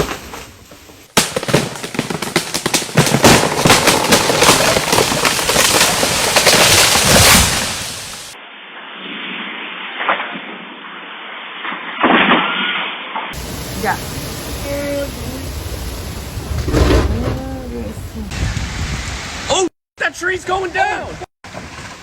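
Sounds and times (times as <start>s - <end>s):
wood cracking as tree falls: 0.0s - 8.4s
muffled outdoor noise: 13.4s - 19.5s
strong wind: 13.4s - 19.6s.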